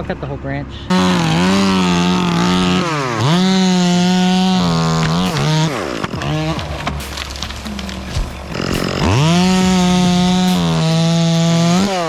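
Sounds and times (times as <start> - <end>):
chainsaw cutting branch: 0.9 - 12.0
wood cracking: 0.9 - 12.0.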